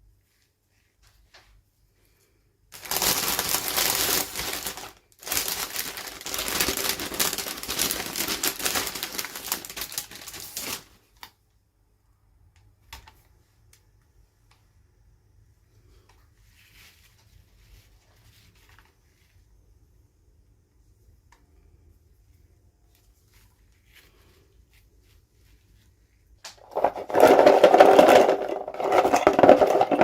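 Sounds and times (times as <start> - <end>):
plastic packaging crinkling: 2.7 - 11.0, 26.6 - 30.0.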